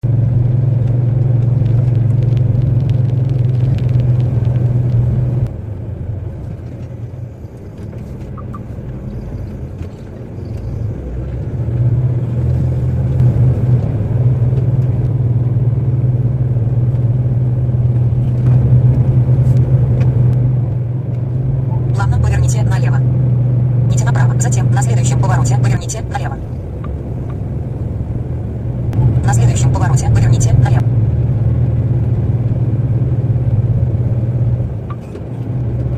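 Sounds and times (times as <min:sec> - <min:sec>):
lorry engine and road drone: 0:00.0 - 0:35.9.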